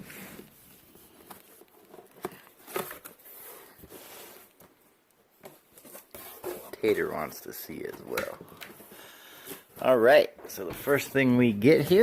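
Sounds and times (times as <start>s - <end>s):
cardboard and paper rustling: 0.0s - 4.8s.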